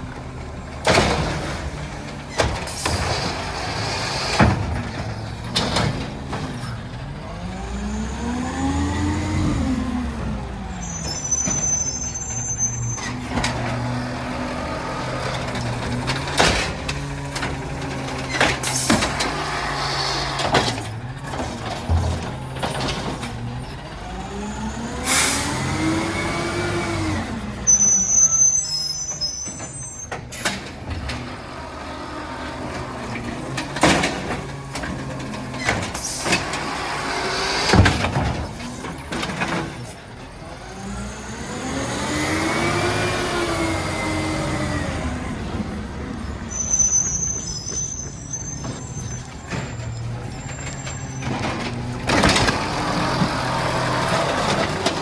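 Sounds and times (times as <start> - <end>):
garbage truck engine revving: 0.0 - 28.8, 29.7 - 55.0
high squeals: 10.7 - 14.0, 27.6 - 30.2, 46.0 - 51.6
air brake hisses: 25.0 - 25.7.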